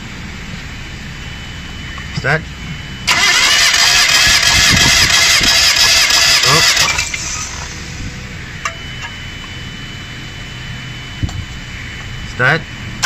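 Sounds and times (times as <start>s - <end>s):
starter motor cranking engine: 3.1s - 7.8s.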